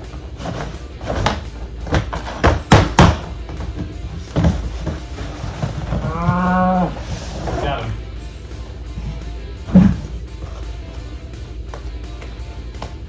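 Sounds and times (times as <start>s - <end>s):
cardboard and plastic rummaging: 0.0s - 8.0s.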